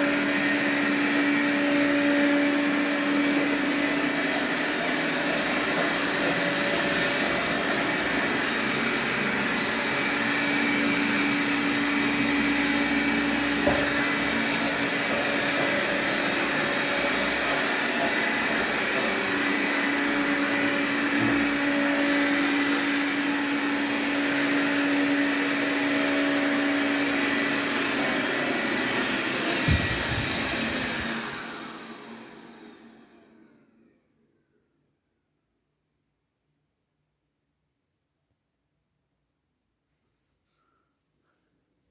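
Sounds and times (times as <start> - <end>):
robot vacuum whirring: 0.0 - 32.9.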